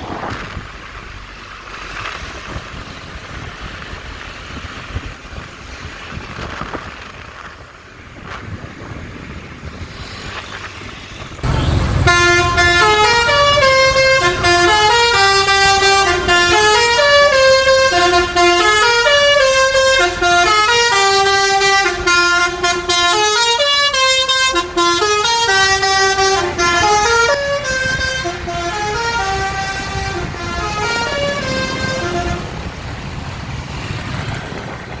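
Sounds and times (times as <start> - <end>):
musical bus horn melody: 11.4 - 32.6.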